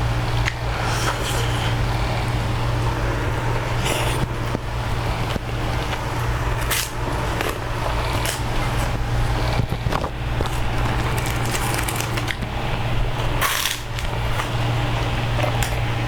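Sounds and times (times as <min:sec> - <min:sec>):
steady low hum: 0:00.0 - 0:16.0
chewing and crunching food: 0:03.7 - 0:15.9
crisp clicks and crackles: 0:04.0 - 0:15.8.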